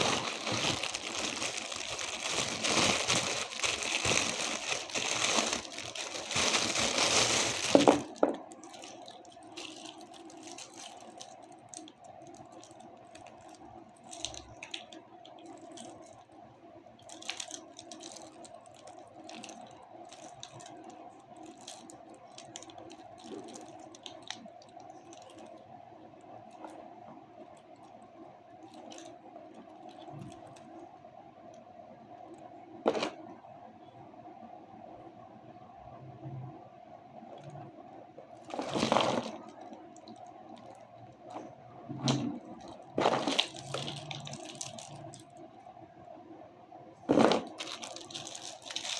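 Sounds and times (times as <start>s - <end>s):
plastic packaging crinkling: 0.0s - 16.3s, 17.0s - 25.6s, 28.6s - 30.8s, 32.9s - 33.2s, 38.2s - 45.4s, 47.1s - 48.9s.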